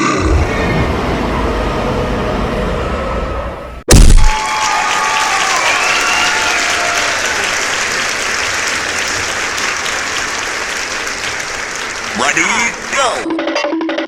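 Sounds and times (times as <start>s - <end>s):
crowd clapping: 4.3s - 13.3s.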